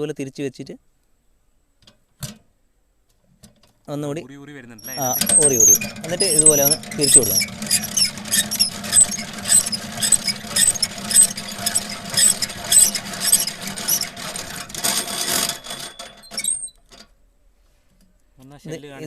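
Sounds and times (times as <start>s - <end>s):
hand-cranked extractor gears squeaking: 4.8s - 17.1s.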